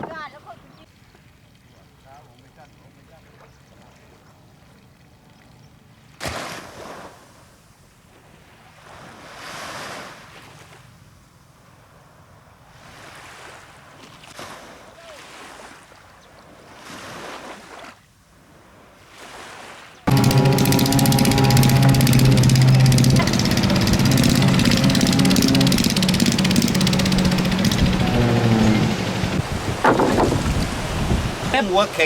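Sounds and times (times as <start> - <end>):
wind: 0.0 - 32.0
sea waves splashing: 12.8 - 16.0, 18.7 - 32.0.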